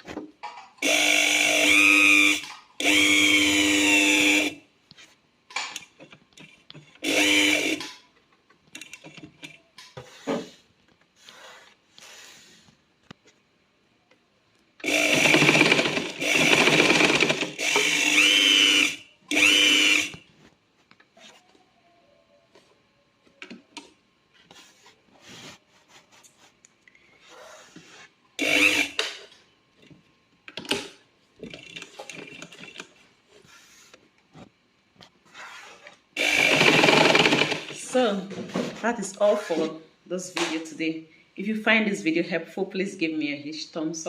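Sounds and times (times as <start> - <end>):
sewing machine motor whine: 0.8 - 4.6, 7.0 - 7.9, 14.8 - 20.2, 28.4 - 29.0, 36.2 - 38.0.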